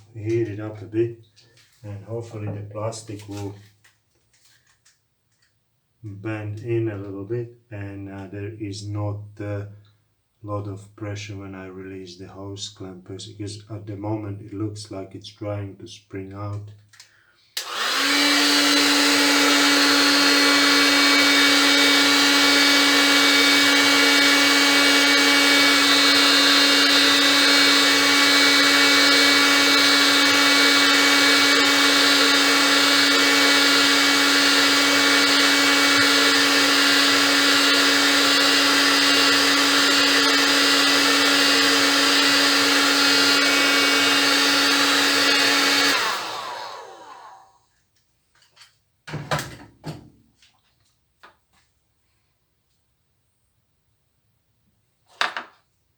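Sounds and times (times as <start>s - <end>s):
heat gun fan humming: 17.6s - 47.6s.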